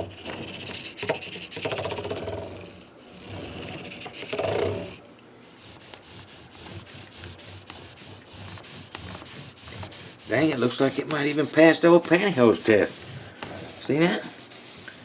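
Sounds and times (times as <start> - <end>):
cloth rubbing guitar fretboard: 5.6 - 15.0.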